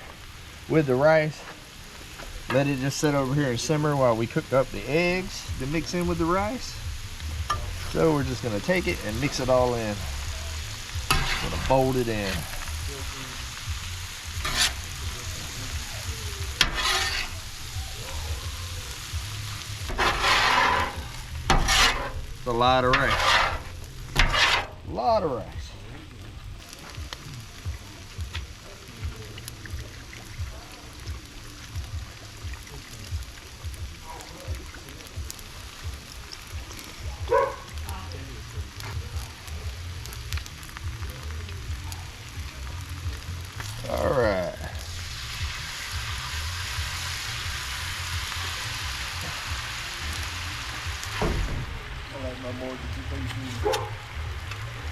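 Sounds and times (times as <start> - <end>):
food sizzling on a griddle: 0.0 - 54.9
metal spatula scraping: 7.4 - 17.7, 18.9 - 24.8.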